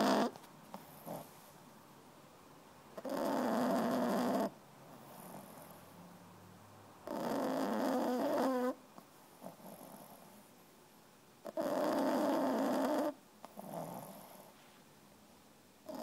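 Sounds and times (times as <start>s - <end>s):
puppy snoring: 0.0s - 1.5s, 2.9s - 5.9s, 7.0s - 10.5s, 11.4s - 14.6s.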